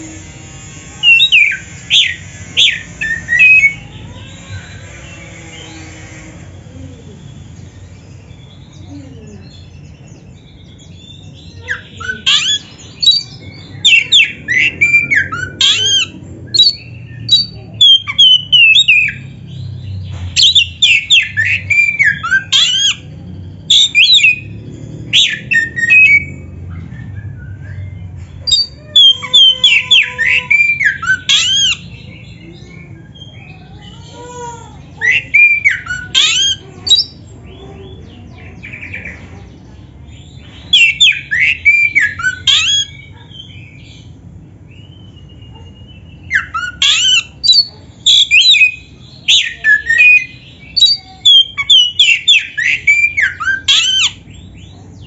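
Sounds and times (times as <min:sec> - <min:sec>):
bird singing whistles: 0:11.6 - 0:19.3, 0:40.7 - 0:43.2, 0:44.8 - 0:54.2.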